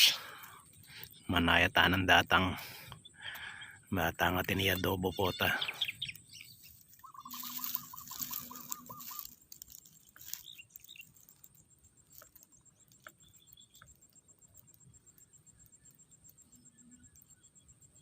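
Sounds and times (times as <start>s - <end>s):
faint chirps and clicks: 0.0s - 18.0s
pulsing insect drone: 0.0s - 18.0s
bird trilling: 3.0s - 11.5s.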